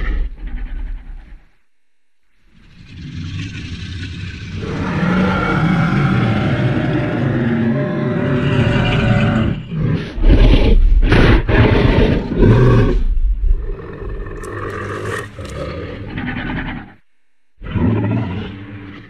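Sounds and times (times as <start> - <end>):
loud roars: 2.7 - 13.0.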